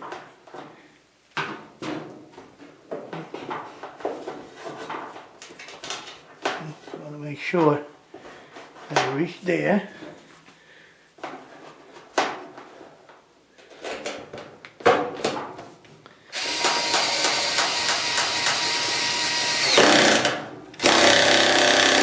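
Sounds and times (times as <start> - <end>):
power drill running: 16.3 - 22.0.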